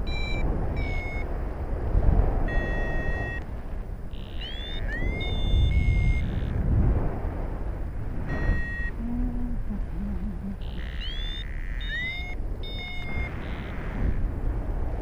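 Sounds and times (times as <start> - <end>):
short high beeps: 0.0 - 1.3, 2.5 - 3.5, 4.1 - 6.6, 8.2 - 9.1, 9.9 - 14.1
steady low rumble: 0.0 - 15.0
wind buffeting microphone: 0.0 - 15.0
quick rising chirps: 4.2 - 6.5, 10.6 - 13.7.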